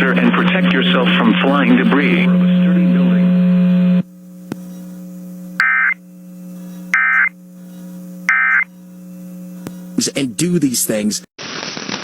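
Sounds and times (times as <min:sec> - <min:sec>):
low hum: 0:00.0 - 0:10.4
loud static hiss: 0:00.0 - 0:11.3
electronic warbling data bursts: 0:04.0 - 0:09.0.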